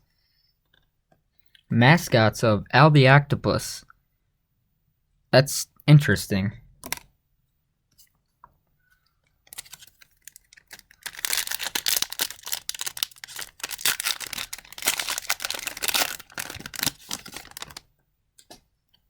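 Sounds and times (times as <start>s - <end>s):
foil wrapper tearing and crinkling: 9.5s - 17.8s.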